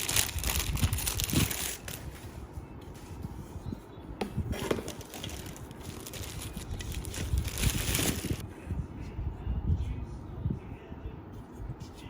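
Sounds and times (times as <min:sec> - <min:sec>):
handling rustling: 0:00.0 - 0:08.4.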